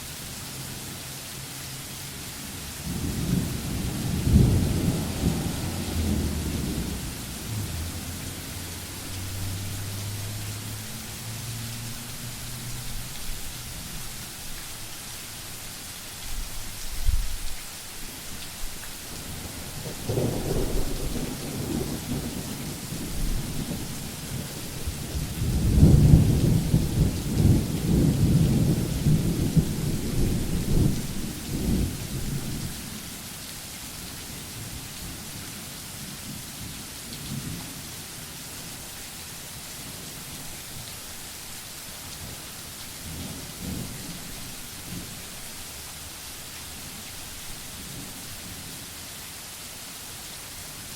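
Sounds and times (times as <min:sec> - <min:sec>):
steady rain: 0:00.0 - 0:50.9
thunder rolling: 0:02.9 - 0:08.3.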